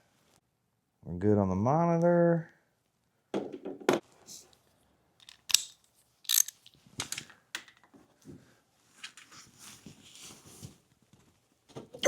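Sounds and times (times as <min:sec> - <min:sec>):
hand tool clicking on metal: 0:05.2 - 0:06.6.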